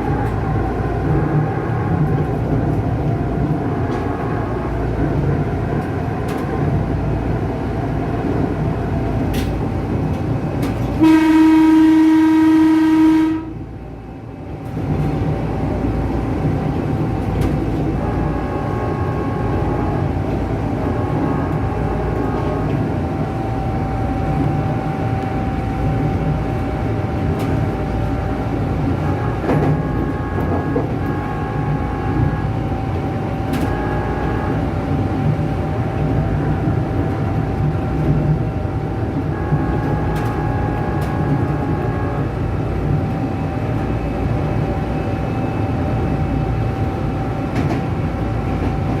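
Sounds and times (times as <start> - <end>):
train horn blast: 0.0 - 7.7, 10.6 - 13.7, 17.4 - 45.4
electric train rumble and whine: 0.0 - 49.0.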